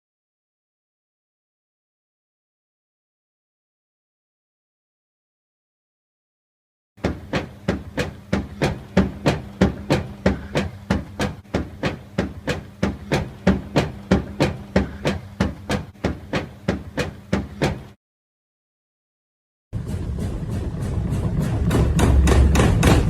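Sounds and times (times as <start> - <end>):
washing machine knocking: 7.0 - 18.0, 19.8 - 23.0
steady low hum: 19.8 - 23.0.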